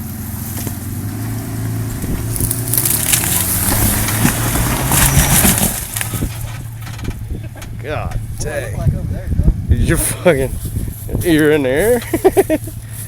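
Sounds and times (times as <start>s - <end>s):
vehicle engine pulling under load: 0.0s - 13.0s
tyres crunching over rock: 0.3s - 8.4s
cracks and pops: 2.4s - 6.2s.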